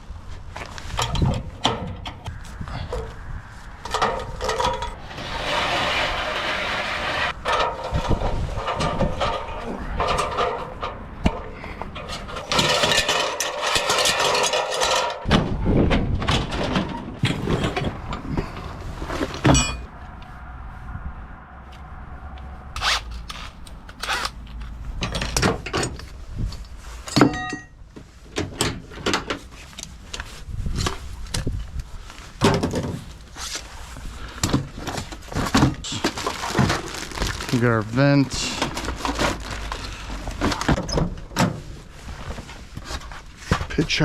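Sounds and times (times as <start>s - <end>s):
dense harsh tool noise: 0.9s - 15.5s
knocks thunks and scrapes: 3.8s - 20.0s, 32.3s - 37.5s.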